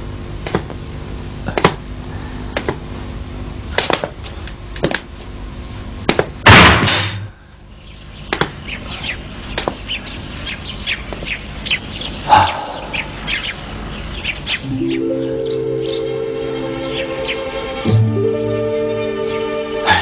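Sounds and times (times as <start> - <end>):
loud sharp burst of noise: 6.4 - 7.4
small birds chirping: 7.5 - 19.5.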